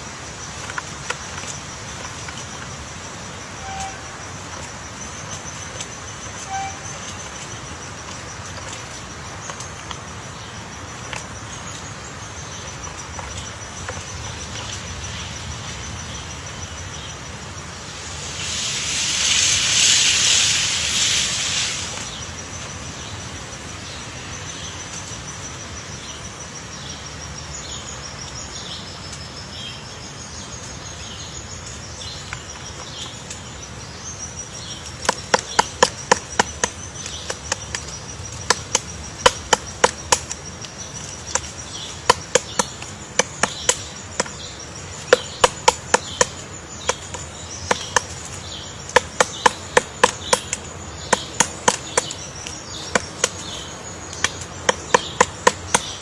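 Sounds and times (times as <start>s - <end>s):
high insect buzz: 13.5s - 25.4s
woodpecker pecking at wood: 17.8s - 22.1s, 45.0s - 56.0s.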